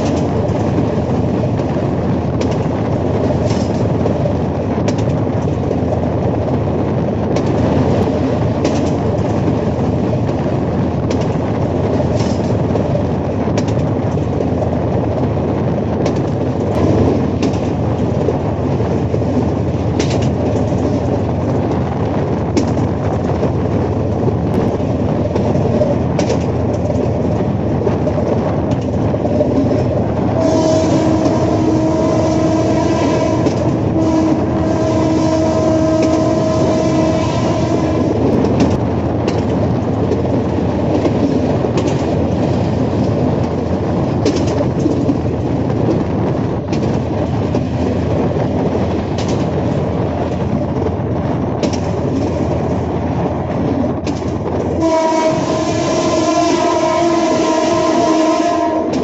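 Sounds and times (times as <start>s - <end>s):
wheels clacking over rail joints: 0.0s - 6.1s, 6.9s - 55.6s
locomotive engine and rails din: 0.0s - 59.0s
locomotive horn: 30.3s - 38.3s, 54.8s - 59.0s.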